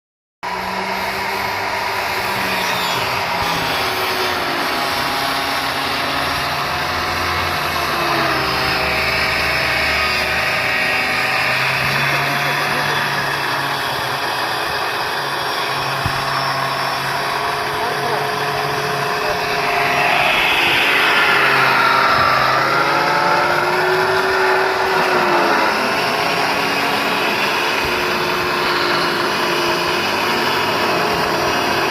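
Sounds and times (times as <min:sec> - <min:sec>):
cutting machine running: 0:00.4 - 0:31.9.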